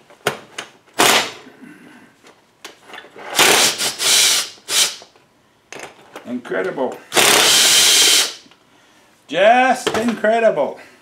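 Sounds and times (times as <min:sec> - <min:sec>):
power tool bursts: 0:03.4 - 0:05.0, 0:07.1 - 0:08.4.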